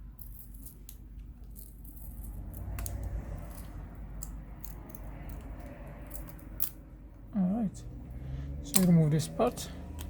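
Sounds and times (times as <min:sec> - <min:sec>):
low steady hum: 0:00.0 - 0:10.0
small tools clicking and scraping: 0:00.2 - 0:06.8.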